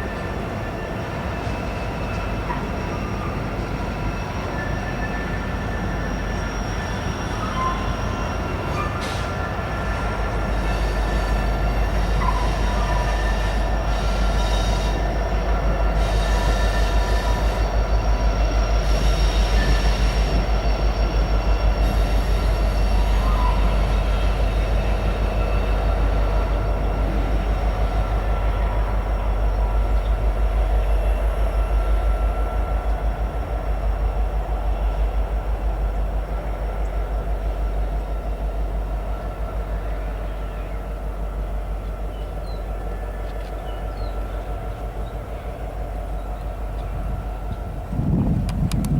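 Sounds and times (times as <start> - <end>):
high wheel squeal: 0.0 - 33.8
freight train rumbling past: 0.0 - 48.9.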